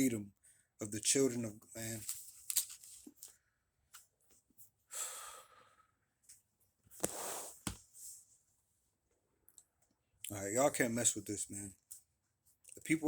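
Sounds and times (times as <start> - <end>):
man breathing out: 4.9 - 6.0.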